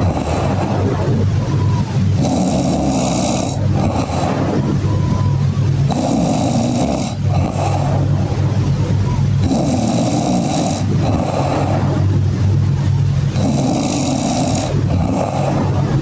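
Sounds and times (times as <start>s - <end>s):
person snoring loudly: 0.0s - 1.2s, 2.2s - 4.7s, 5.9s - 8.1s, 9.4s - 12.1s, 13.4s - 16.0s.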